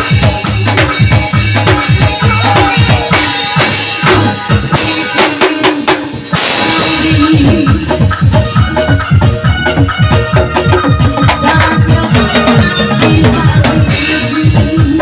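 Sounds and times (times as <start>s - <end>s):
tuned drums dance music: 6.8s - 15.0s.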